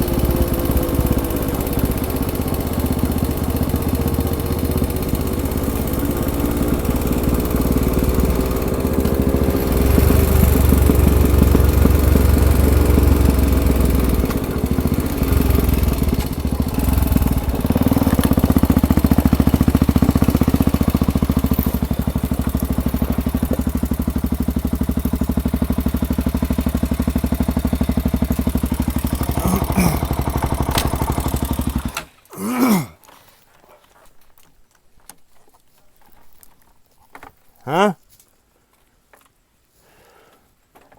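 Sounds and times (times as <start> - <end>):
quad bike engine revving: 0.0 - 32.6.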